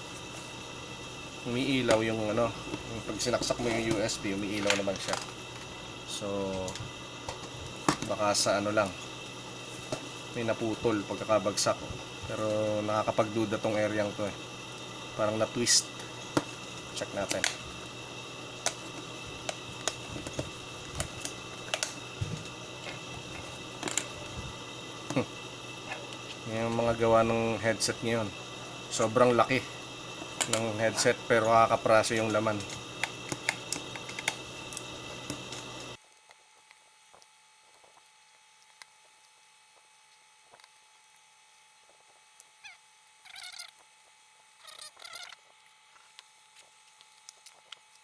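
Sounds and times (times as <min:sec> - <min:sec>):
steady hiss: 0:00.0 - 0:36.0.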